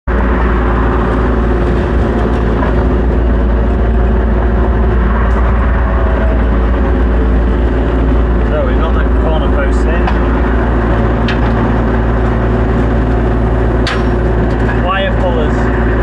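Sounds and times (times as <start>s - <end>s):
tractor engine droning: 0.0s - 16.0s.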